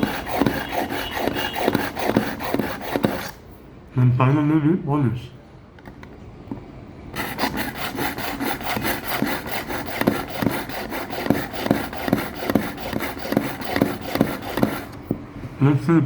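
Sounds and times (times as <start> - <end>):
knife rasping through sharpener: 0.0 - 3.4, 7.2 - 15.0.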